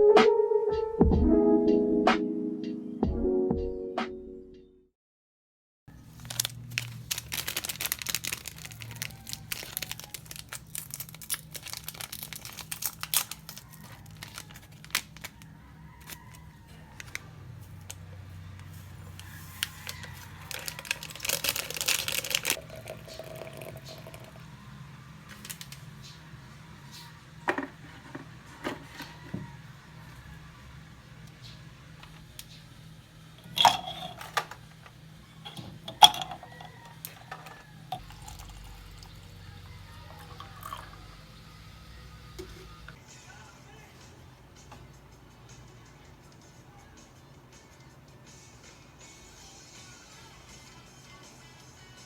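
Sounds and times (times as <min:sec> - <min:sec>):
crinkling and rustling: 0:06.0 - 0:18.0, 0:18.6 - 0:22.8, 0:25.3 - 0:25.9.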